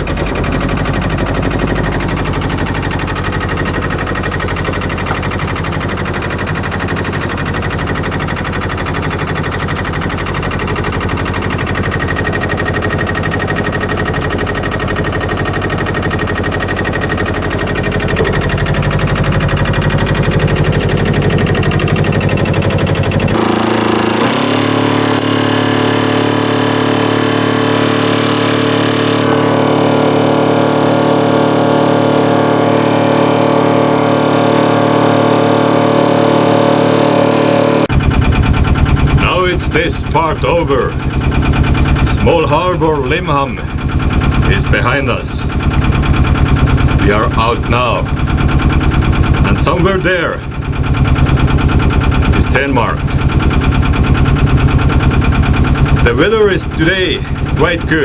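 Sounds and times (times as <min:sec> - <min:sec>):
boat engine rumble: 0:00.0 - 0:35.9
steady higher hum: 0:00.0 - 0:58.0.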